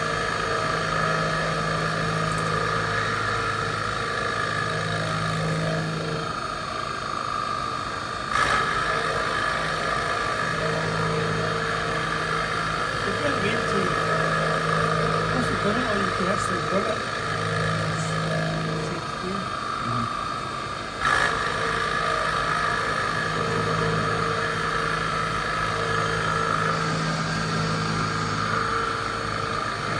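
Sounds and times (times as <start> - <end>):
high machine whine: 0.0 - 29.9
machine hum: 0.0 - 29.9.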